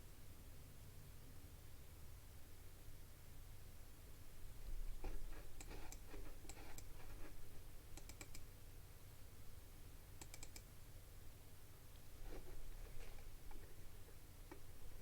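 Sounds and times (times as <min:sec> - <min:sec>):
low steady hum: 0:00.0 - 0:15.0
mouse and keyboard clicks: 0:05.6 - 0:07.0, 0:08.0 - 0:08.5, 0:10.2 - 0:10.7.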